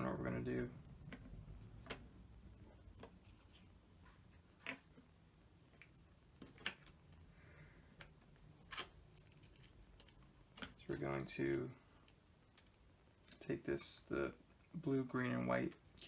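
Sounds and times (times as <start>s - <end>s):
faint clicks and taps from handling wires: 1.0s - 13.5s.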